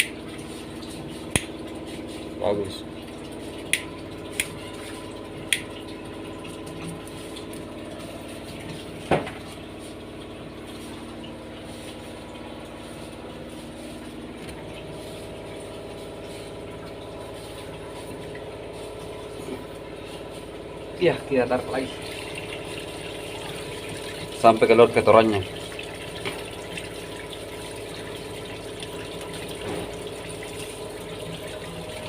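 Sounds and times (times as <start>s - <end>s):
washing machine motor hum: 0.0s - 32.0s.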